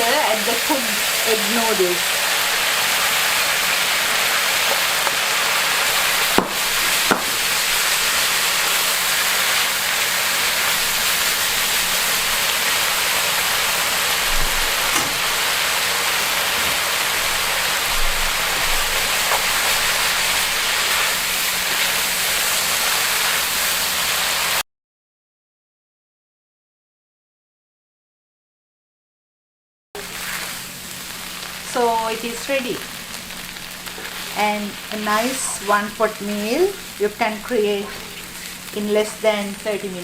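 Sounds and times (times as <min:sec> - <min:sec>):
stir-fry sizzling in a pan: 0:00.0 - 0:24.6, 0:30.0 - 0:40.0
sharp knocks: 0:06.4 - 0:07.4.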